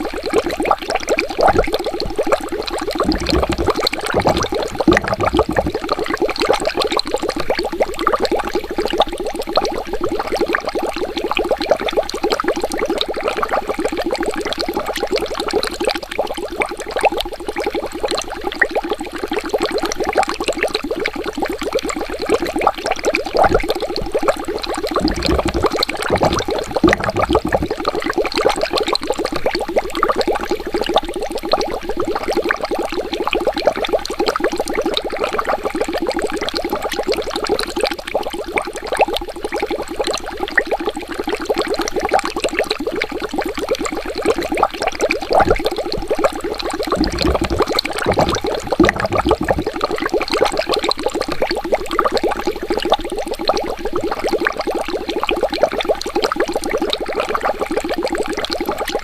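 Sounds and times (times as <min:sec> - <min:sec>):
water bubbling: 0:00.1 - 0:20.3, 0:20.9 - 0:33.9, 0:34.6 - 0:55.9
deep gurgles: 0:01.5 - 0:06.3, 0:23.4 - 0:28.3, 0:45.3 - 0:50.7.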